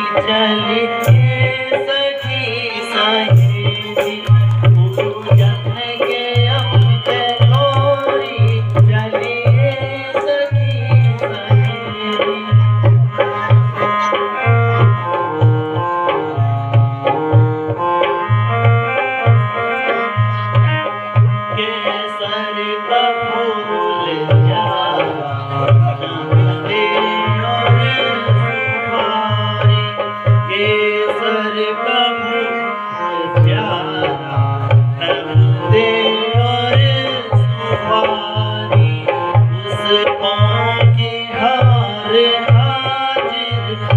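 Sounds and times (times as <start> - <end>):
instrumental melody line: 0.0 - 43.9
hand drum beat: 3.2 - 18.3.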